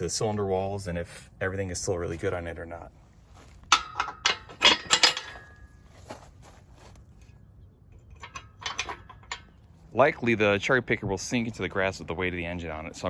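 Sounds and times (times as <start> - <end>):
sharp metallic clanks: 3.6 - 5.8, 8.0 - 9.7.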